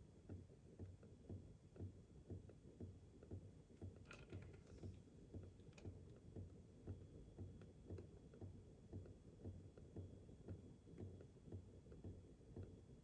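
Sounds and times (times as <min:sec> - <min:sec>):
faint low knocks with clicks: 0:00.0 - 0:13.0.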